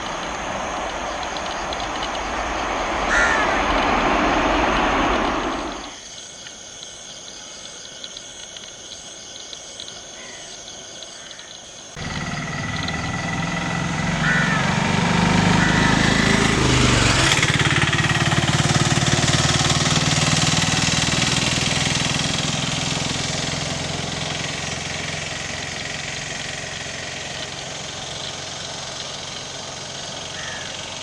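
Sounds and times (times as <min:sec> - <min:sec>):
jet engines roaring: 0:00.0 - 0:06.0, 0:12.0 - 0:28.2.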